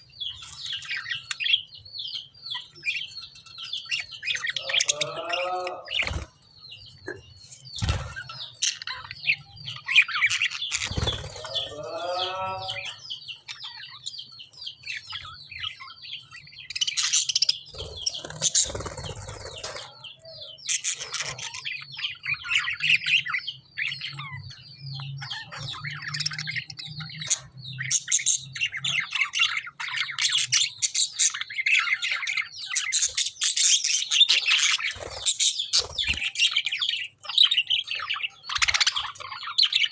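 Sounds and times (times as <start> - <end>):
lovebirds chirping: 0.0 - 39.9
harsh rippling bird call: 10.9 - 13.0.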